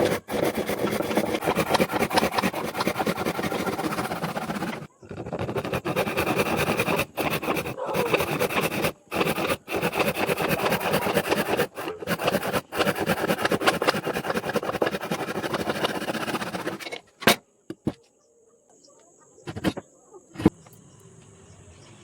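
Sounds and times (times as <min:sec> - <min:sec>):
woodworking machinery running: 0:00.0 - 0:04.9, 0:05.5 - 0:17.4.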